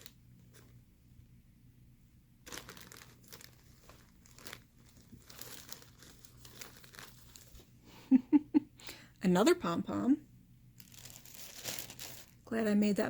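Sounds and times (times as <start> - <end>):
plastic bag crinkling: 2.4 - 7.8, 10.8 - 12.5.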